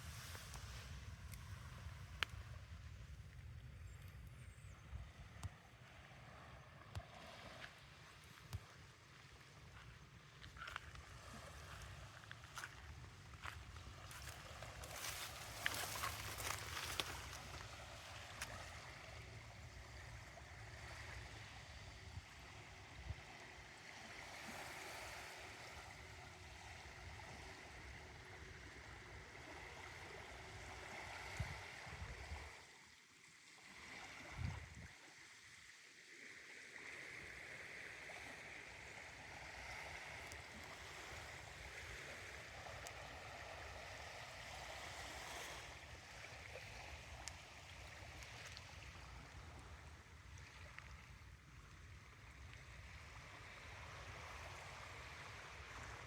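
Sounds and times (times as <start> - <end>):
constant wash of noise: 0.0 - 33.7
wind rumbling on microphone: 24.4 - 32.7, 34.2 - 35.0.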